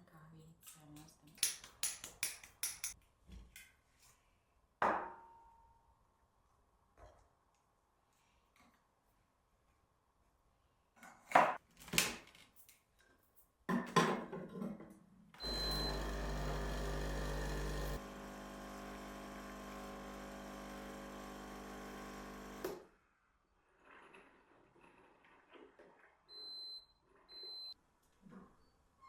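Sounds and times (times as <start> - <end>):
coffee machine humming: 15.4 - 22.8.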